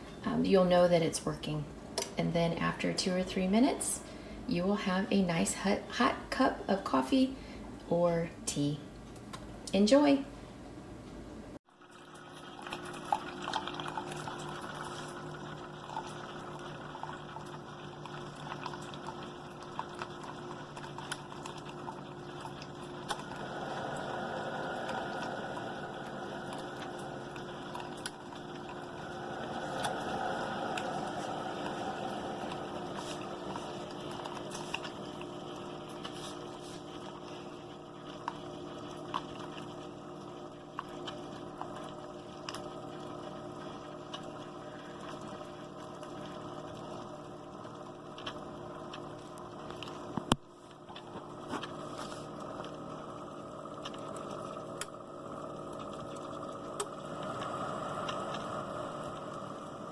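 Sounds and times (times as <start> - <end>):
coffee maker humming: 11.6 - 59.9
water hissing and bubbling: 12.0 - 47.1, 51.3 - 59.9.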